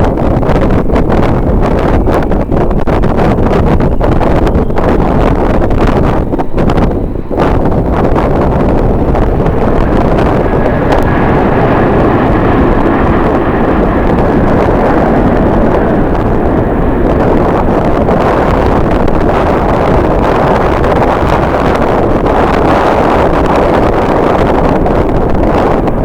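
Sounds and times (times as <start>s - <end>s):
wind blowing across microphone: 0.0s - 26.0s.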